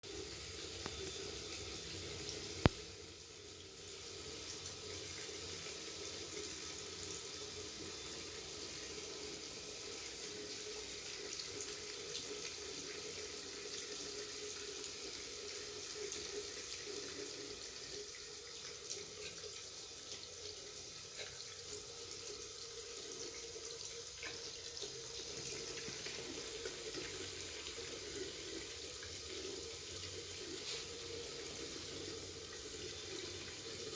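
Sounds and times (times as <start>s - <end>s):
tap water running into sink: 0.0s - 33.9s.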